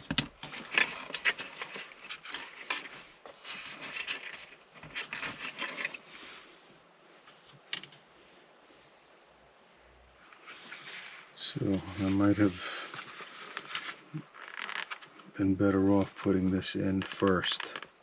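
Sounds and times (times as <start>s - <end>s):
small metal parts clicking: 0.1s - 3.1s.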